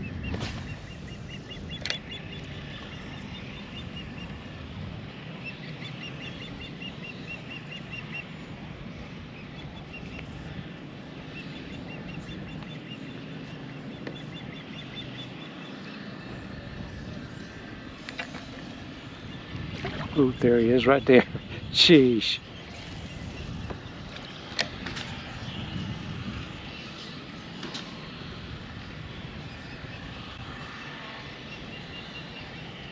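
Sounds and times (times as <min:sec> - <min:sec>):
water lapping around kayak: 0:00.0 - 0:21.7, 0:22.4 - 0:26.7
wind: 0:00.0 - 0:32.9
bird chirping: 0:11.3 - 0:16.5.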